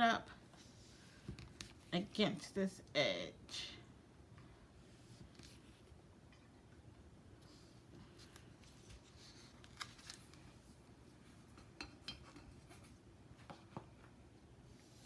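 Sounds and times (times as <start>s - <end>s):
paper and tape crinkling: 8.2s - 10.6s.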